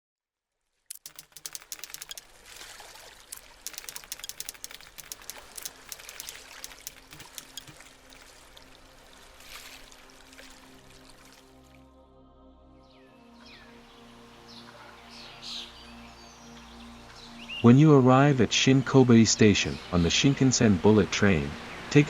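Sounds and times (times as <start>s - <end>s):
water splashing and trickling: 0.9s - 11.9s
soft music: 3.7s - 22.0s.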